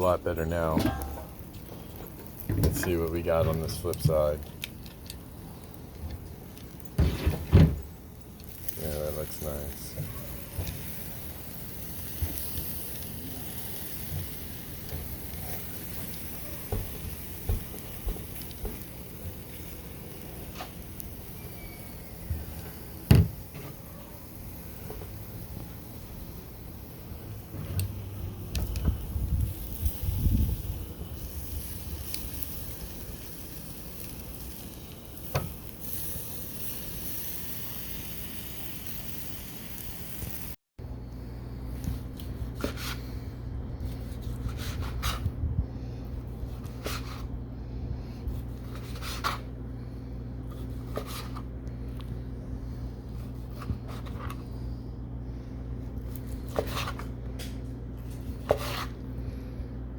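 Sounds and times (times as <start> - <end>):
meat sizzling on a grill: 0.0 - 40.6
steady low hum: 40.8 - 59.9.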